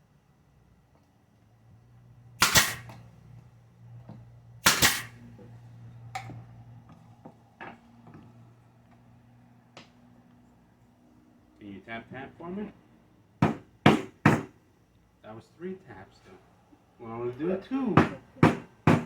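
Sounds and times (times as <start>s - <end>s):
nail gun firing: 2.4s - 3.0s, 4.6s - 5.2s.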